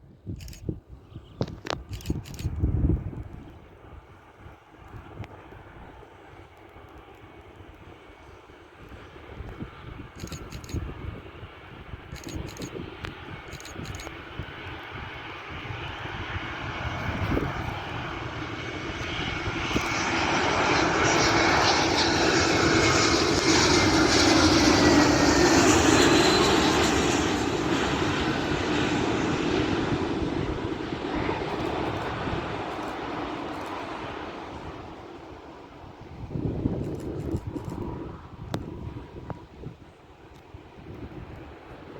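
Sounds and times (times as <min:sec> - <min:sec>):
jet airliner flying past: 0:00.0 - 0:41.9
thin engine whine: 0:16.3 - 0:34.0.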